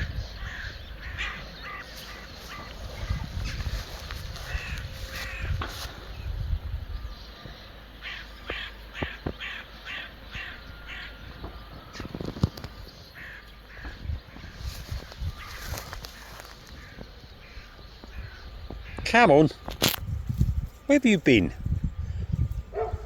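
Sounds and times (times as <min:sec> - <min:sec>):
crow cawing: 0:00.4 - 0:05.8, 0:08.0 - 0:11.3, 0:13.1 - 0:19.0.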